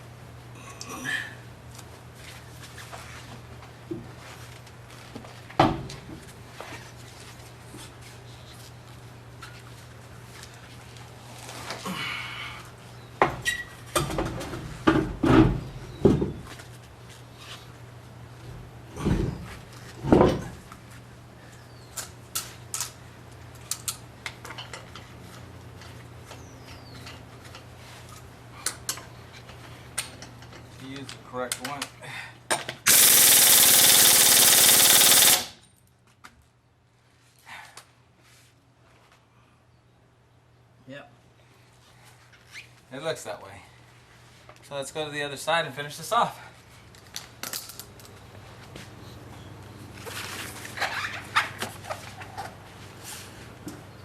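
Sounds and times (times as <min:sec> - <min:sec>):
rustle: 0:01.7 - 0:13.0
impact wrench hammering: 0:32.9 - 0:35.6.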